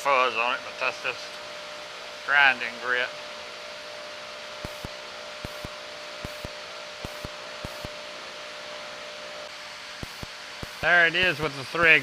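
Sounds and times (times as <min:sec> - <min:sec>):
machine whirring hiss: 0:04.6 - 0:08.0, 0:09.1 - 0:12.0.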